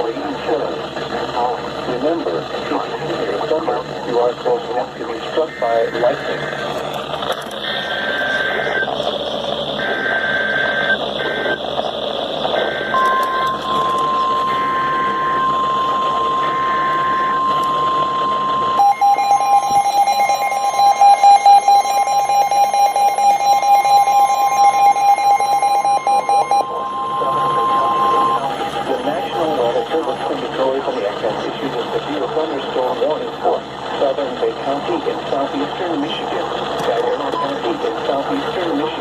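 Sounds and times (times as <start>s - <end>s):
radio hiss: 0.0s - 10.3s, 26.7s - 39.0s
warbling data tones: 1.3s - 39.0s
lower pulsing alarm tone: 3.1s - 33.0s
steady alert tone: 12.6s - 32.1s.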